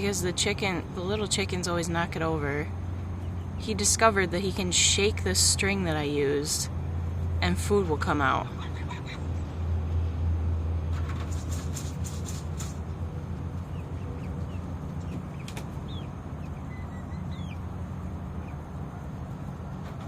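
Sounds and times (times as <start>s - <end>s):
faint high bird chirps: 13.7s - 17.7s.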